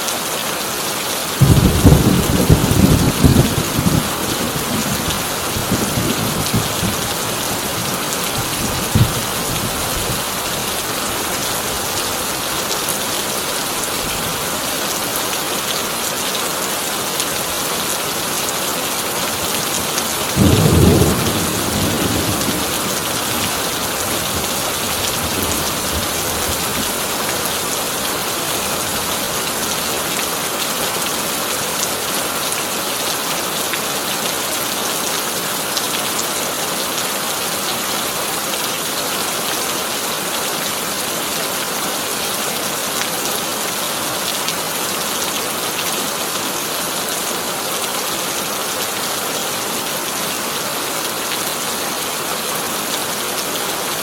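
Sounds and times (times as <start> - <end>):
heavy rain on a tin roof: 0.0 - 54.0
thunder rumble: 1.4 - 10.3, 20.4 - 27.0.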